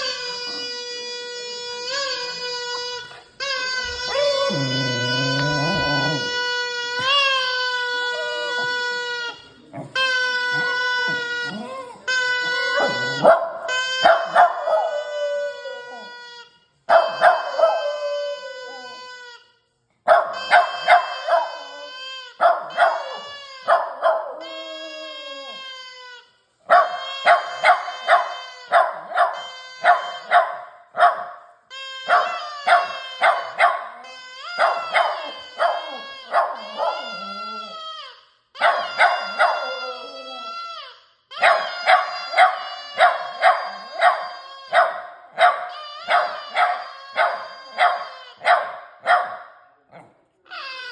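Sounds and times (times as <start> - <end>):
puppy howling: 0.0 - 19.4, 20.1 - 49.4
puppy yips and barks: 12.8 - 16.1, 16.9 - 19.0, 20.1 - 24.6, 26.7 - 31.4, 32.0 - 37.7, 38.6 - 40.5, 41.3 - 49.6.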